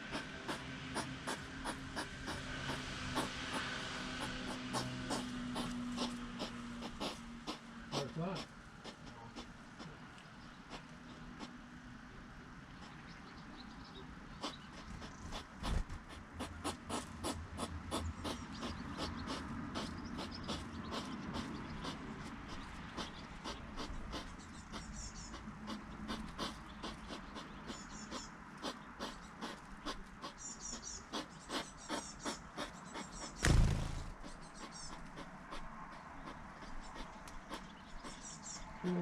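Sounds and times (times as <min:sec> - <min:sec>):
thump: 0:33.4 - 0:34.2.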